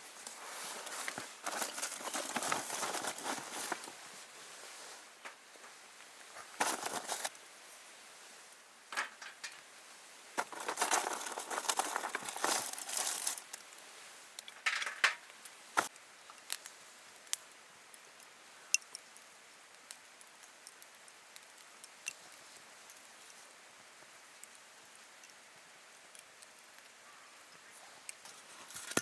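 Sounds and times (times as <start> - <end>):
crinkling and rustling: 0.2 - 7.4, 8.9 - 9.7, 10.4 - 13.7, 14.4 - 15.9, 28.2 - 29.0.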